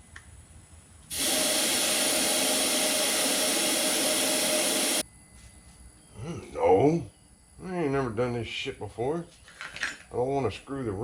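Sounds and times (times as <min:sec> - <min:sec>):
rushing air hiss: 0:01.1 - 0:05.0.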